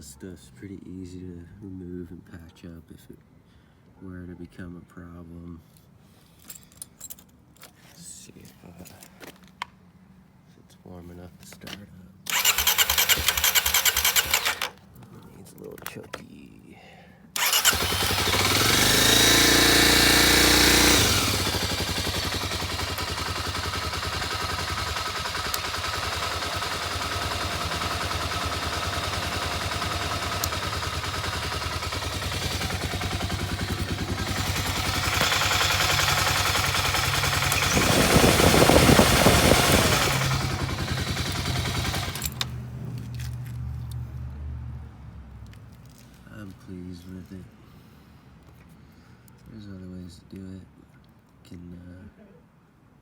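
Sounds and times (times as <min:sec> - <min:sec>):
motorcycle engine revving and idling: 0:12.3 - 0:14.7, 0:17.4 - 0:43.4.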